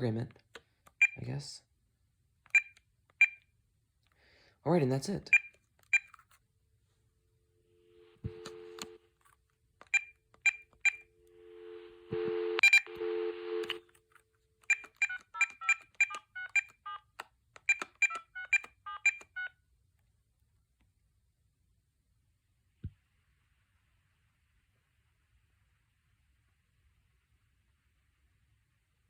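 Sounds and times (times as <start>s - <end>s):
phone key beeps: 0.9s - 1.2s, 2.5s - 3.5s, 5.3s - 6.2s, 9.8s - 11.0s, 14.6s - 17.0s, 17.6s - 19.5s
touch-tone dialing beeps: 2.5s - 3.4s, 8.2s - 9.0s, 9.9s - 13.8s, 14.6s - 17.0s, 17.7s - 19.6s
dial tone: 8.2s - 9.0s, 11.2s - 13.9s.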